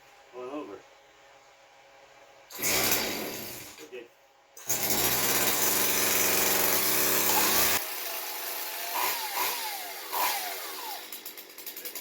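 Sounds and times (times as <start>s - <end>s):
chainsaw engine revving: 2.5s - 3.8s, 4.6s - 12.0s.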